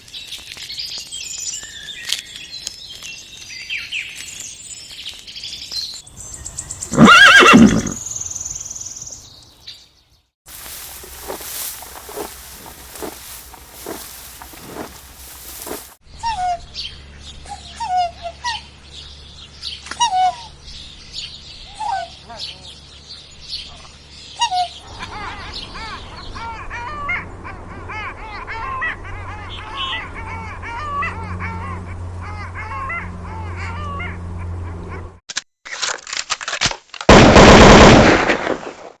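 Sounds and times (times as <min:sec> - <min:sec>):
scattered crackles: 0:00.0 - 0:06.0, 0:10.5 - 0:16.0
birds calling: 0:00.0 - 0:09.8, 0:10.5 - 0:16.0
higher bird chirps: 0:00.0 - 0:09.8
background hiss: 0:10.5 - 0:16.0.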